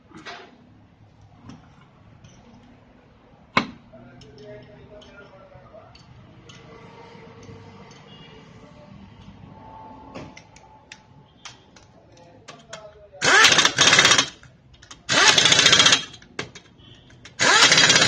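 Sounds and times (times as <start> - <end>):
impact wrench rattling: 13.2 - 18.0.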